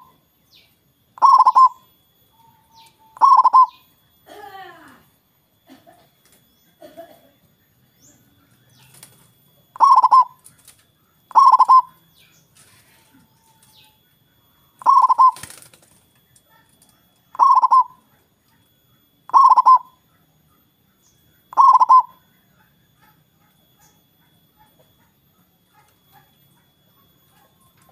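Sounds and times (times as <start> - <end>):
dove cooing: 1.2 - 5.0, 8.0 - 14.0, 14.7 - 20.2, 21.4 - 27.9.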